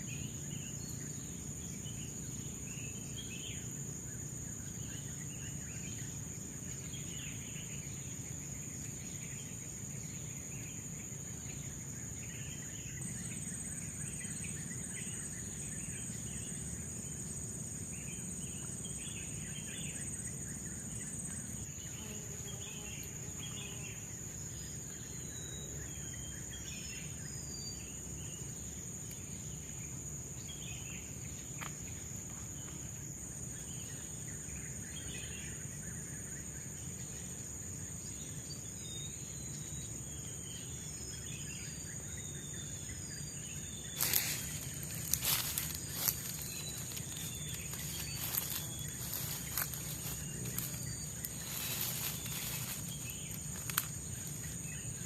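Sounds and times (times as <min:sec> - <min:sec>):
high-pitched insect chorus: 0:00.0 - 0:55.0.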